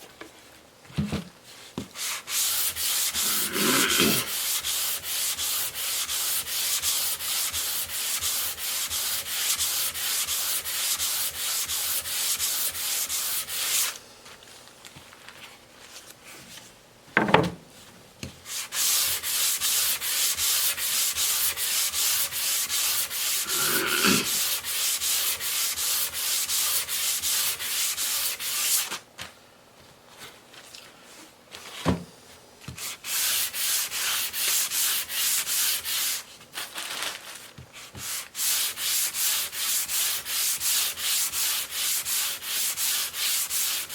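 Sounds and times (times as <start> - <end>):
sanding strokes on wood: 2.0 - 14.0, 18.5 - 29.0, 32.8 - 36.3, 38.0 - 43.9.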